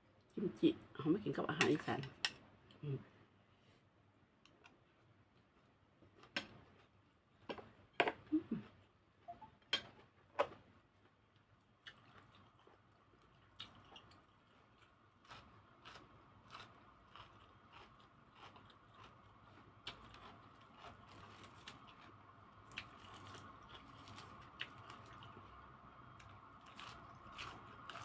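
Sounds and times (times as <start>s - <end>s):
person chewing crunchy vegetables: 11.8s - 28.0s.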